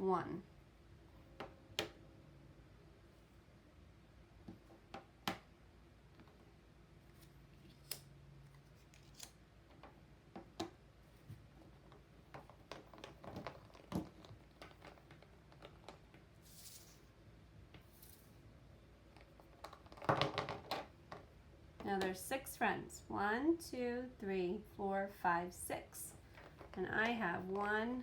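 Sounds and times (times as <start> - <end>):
play cookies clicking and tapping: 11.4 - 16.3, 19.1 - 22.2
soft rustle: 16.4 - 17.2.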